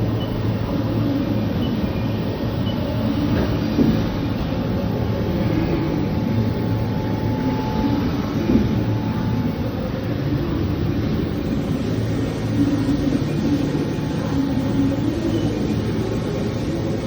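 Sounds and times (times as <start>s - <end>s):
faint thin whine: 0.0s - 17.0s
machining centre rumble: 0.0s - 17.0s.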